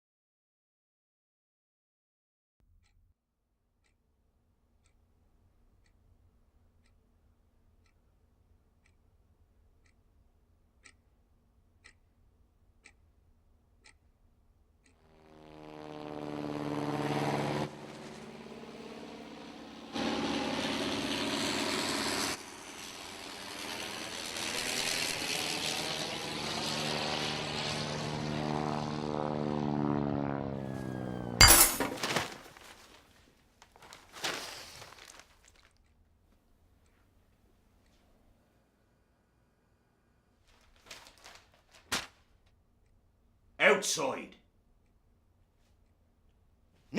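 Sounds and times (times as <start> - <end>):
clock ticking: 4.7 - 15.0
loud crash with clinking: 31.4 - 32.4.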